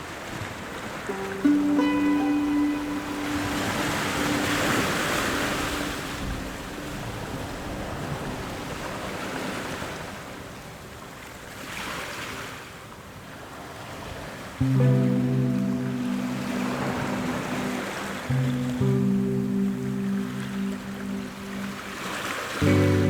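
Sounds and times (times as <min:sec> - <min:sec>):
waves washing in: 0:00.8 - 0:23.0
held musical tone: 0:01.1 - 0:07.6, 0:14.6 - 0:23.0.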